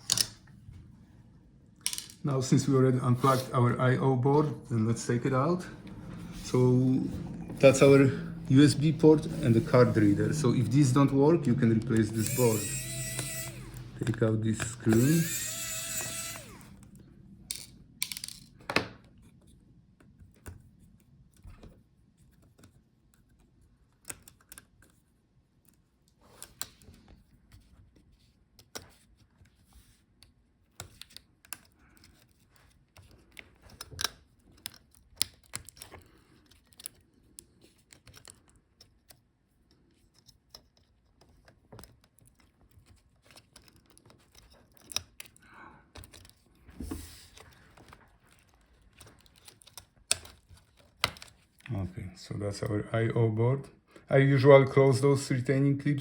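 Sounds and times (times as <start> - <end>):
clicks and taps of laptop parts: 47.8 - 51.7.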